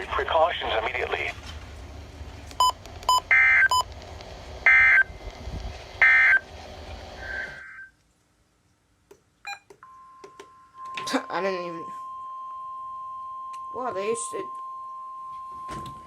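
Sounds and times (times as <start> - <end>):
single-pitch warning alarm tone: 9.8 - 16.0.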